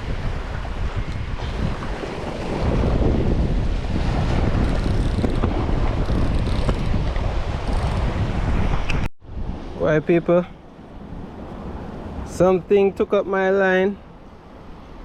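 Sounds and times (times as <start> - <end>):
surf washing against rocks: 0.0 - 8.8
wind buffeting microphone: 0.0 - 12.9.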